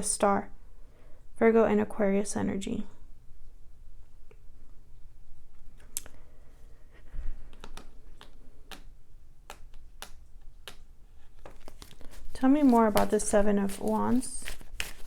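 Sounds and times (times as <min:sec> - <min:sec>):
cards being shuffled: 0:07.3 - 0:15.0.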